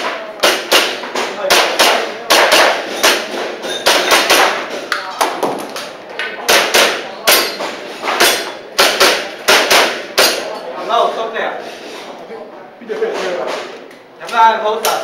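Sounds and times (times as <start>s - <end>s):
airsoft pistol shots: 0.4s - 3.3s.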